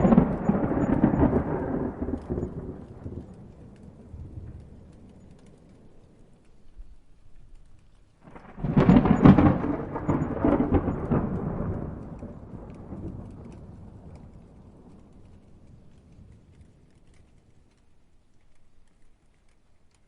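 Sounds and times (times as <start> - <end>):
thunder clap with sharp cracks: 0.0 - 5.7, 8.2 - 17.0
rolling thunder rumble: 0.0 - 6.7, 8.2 - 17.8
raindrops pattering: 0.0 - 20.0.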